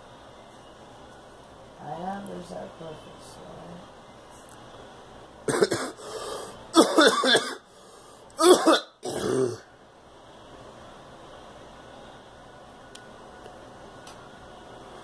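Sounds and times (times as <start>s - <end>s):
girl coughing: 5.5s - 6.0s, 6.8s - 7.6s, 8.4s - 9.6s.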